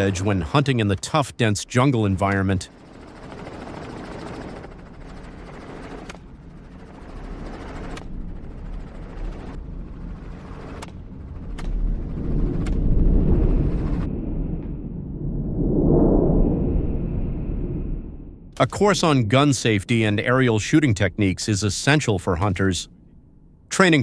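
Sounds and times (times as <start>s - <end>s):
helicopter engine and rotor hum: 0.0s - 14.2s, 18.6s - 24.0s
heavy low rumble: 6.6s - 24.0s.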